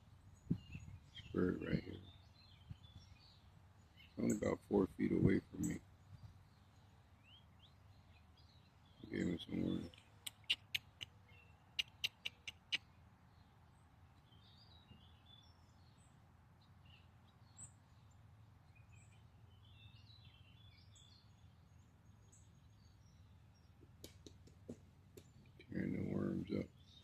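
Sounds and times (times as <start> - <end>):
faint bird chirps: 0.0 - 27.0
sharp clicks: 9.9 - 11.2.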